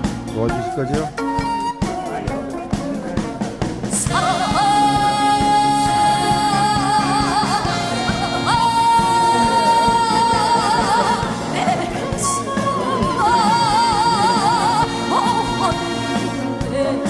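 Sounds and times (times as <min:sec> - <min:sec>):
steady musical accompaniment: 0:00.0 - 0:17.0
person singing with vibrato: 0:01.8 - 0:17.0.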